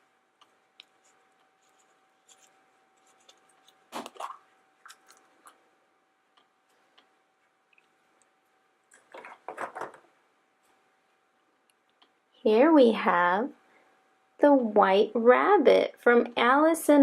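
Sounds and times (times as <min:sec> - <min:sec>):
plastic eggs clicking and rustling: 0:08.9 - 0:10.1.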